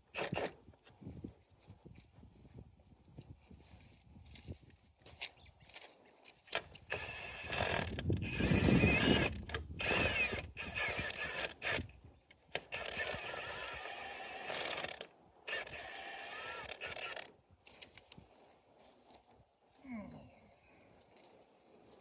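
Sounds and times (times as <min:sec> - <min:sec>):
mechanical tool noise: 0:00.0 - 0:00.6, 0:06.5 - 0:17.3.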